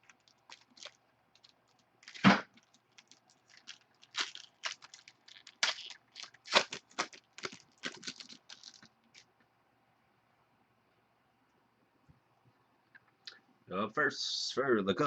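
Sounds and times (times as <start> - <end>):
packaging crinkling and tearing: 0.0 - 9.2.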